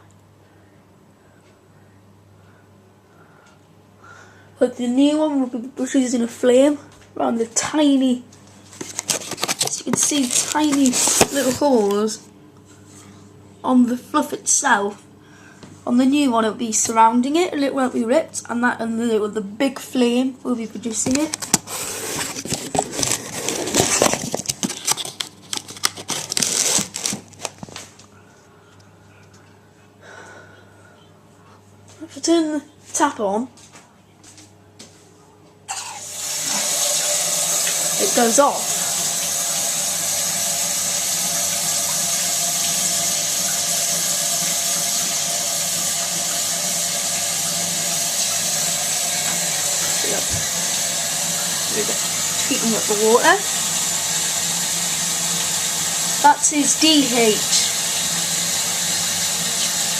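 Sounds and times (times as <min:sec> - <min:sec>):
faint steady hum: 0:00.0 - 0:26.3, 0:26.9 - 0:59.9
rustling crinkling handling noise: 0:08.3 - 0:13.1, 0:20.9 - 0:28.1
tap water running into sink: 0:35.7 - 0:59.9.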